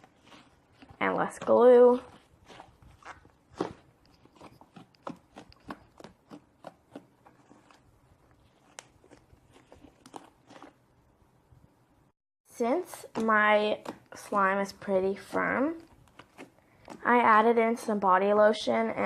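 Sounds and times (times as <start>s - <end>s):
foam slime squished by hand: 0.0s - 7.8s
crunchy crackles and pops: 0.0s - 10.8s.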